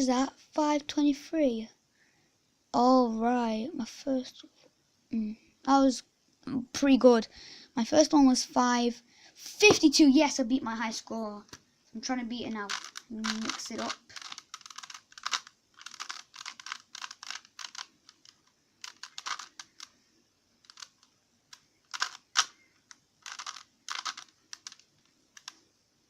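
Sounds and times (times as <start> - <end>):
puzzle cube clicking and rattling: 12.4 - 20.0, 20.6 - 25.7.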